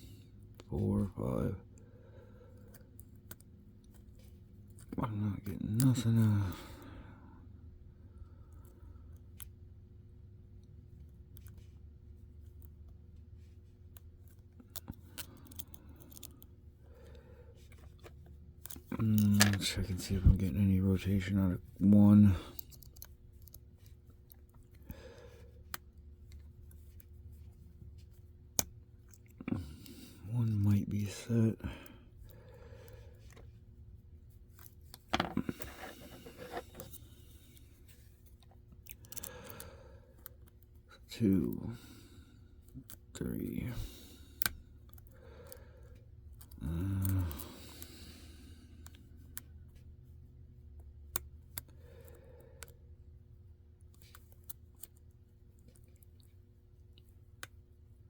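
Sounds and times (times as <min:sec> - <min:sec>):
lock pick scraping and tapping: 0:35.0 - 0:37.1.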